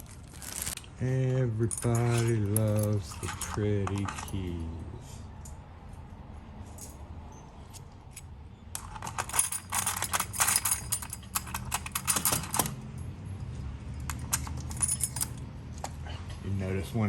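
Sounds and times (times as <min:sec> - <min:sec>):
metal keys jingling: 0:01.6 - 0:04.6, 0:06.6 - 0:07.1, 0:08.2 - 0:15.9.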